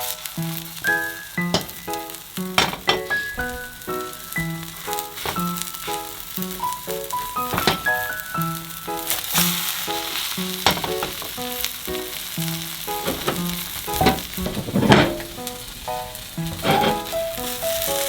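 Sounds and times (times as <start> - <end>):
food sizzling in a frying pan: 0.0 - 18.0
light plucked background music: 0.0 - 18.0
stirring strokes in a pan: 9.0 - 18.0.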